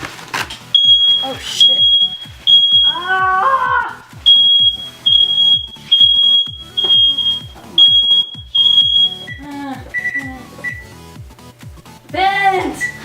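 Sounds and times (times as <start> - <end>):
smoke alarm beeping: 0.7 - 3.2, 4.2 - 11.0, 12.3 - 13.0
person yelling: 2.8 - 4.1.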